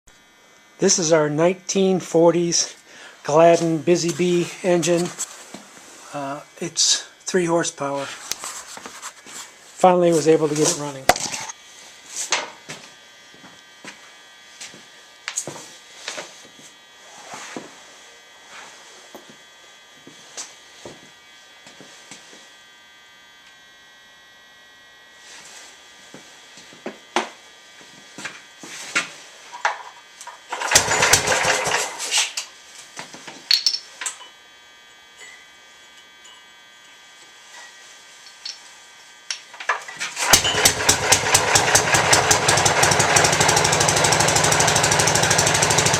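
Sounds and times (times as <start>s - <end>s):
single-cylinder engine running: 30.2s - 32.4s, 39.7s - 45.9s.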